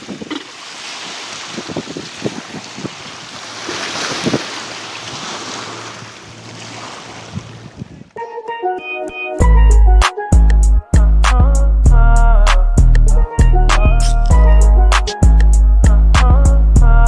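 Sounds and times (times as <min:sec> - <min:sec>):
water rushing: 0:00.0 - 0:08.1
wind buffeting microphone: 0:00.0 - 0:08.2.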